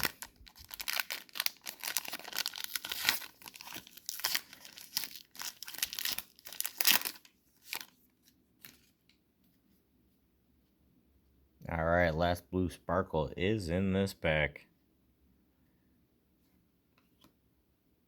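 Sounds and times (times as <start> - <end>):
card pack wrapper tearing: 0.0 - 8.0.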